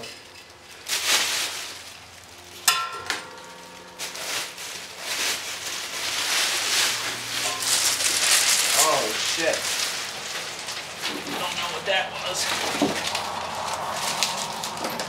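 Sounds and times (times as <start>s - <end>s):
handling and rustling: 0.0s - 15.0s
sharp metallic clang: 2.6s - 5.4s, 7.4s - 7.9s.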